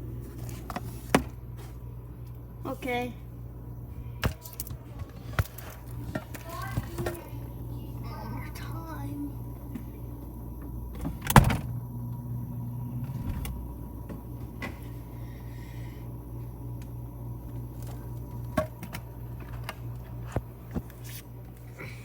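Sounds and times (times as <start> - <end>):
refrigerator low hum: 0.0 - 22.0
refrigerator door thump: 10.9 - 11.8.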